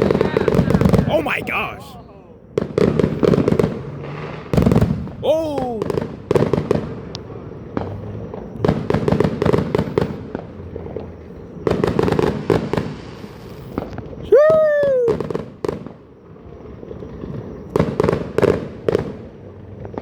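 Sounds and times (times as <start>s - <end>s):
fireworks bangs and crackling: 0.0s - 20.0s
person exclaiming loudly: 1.1s - 2.0s, 5.2s - 5.9s, 14.3s - 15.2s.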